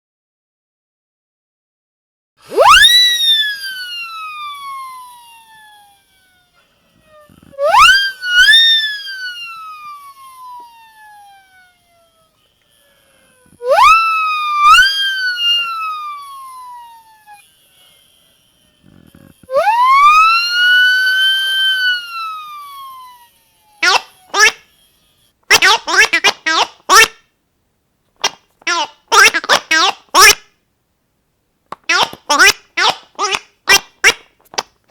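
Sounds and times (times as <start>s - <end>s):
wailing siren tone: 2.4s - 25.4s.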